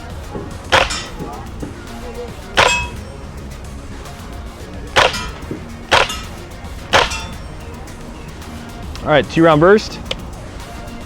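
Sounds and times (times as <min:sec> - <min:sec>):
airsoft gun shots: 0:00.7 - 0:01.4, 0:02.6 - 0:03.1, 0:05.0 - 0:07.5.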